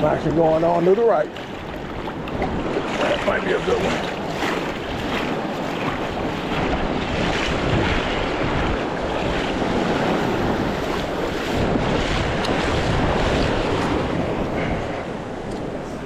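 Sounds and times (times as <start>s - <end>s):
surf washing on beach: 0.0s - 16.0s
wind buffeting microphone: 0.0s - 16.0s.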